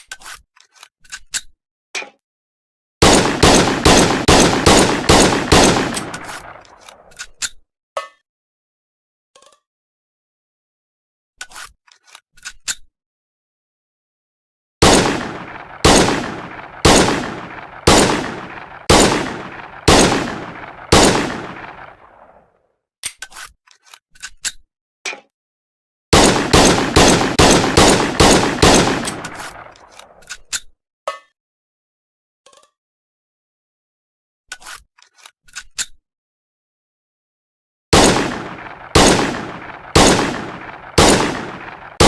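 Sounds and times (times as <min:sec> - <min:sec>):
pistol shots with ringing tail: 0:03.0 - 0:06.7, 0:14.8 - 0:22.4, 0:26.2 - 0:29.8, 0:38.0 - 0:42.0
rapid pistol shots: 0:03.0 - 0:07.1, 0:14.8 - 0:22.4, 0:26.1 - 0:30.0, 0:37.9 - 0:42.0.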